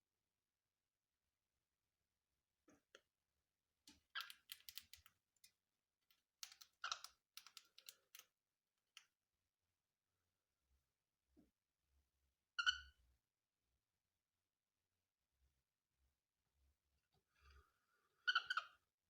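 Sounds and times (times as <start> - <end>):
faint clicking and scratching: 3.9 - 9.0.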